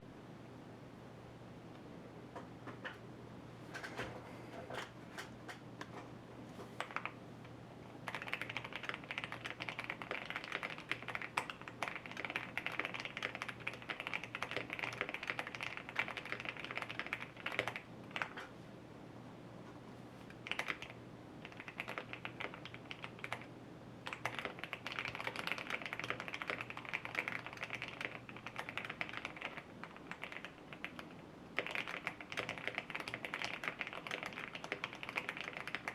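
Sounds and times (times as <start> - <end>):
typing on mechanical keyboard: 6.8 - 7.2, 8.1 - 18.5, 20.3 - 35.9.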